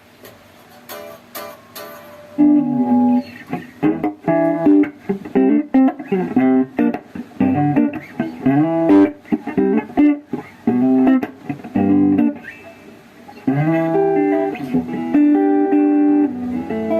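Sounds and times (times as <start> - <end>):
guitar clicks: 0.2 - 16.9
guitar melody with slides: 0.9 - 16.9.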